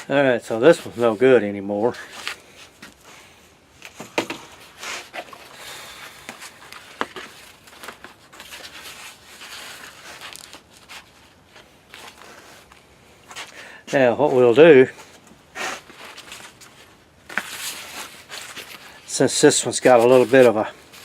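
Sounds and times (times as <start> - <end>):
window shade rustling and crinkling: 3.9 - 12.8, 15.6 - 21.0.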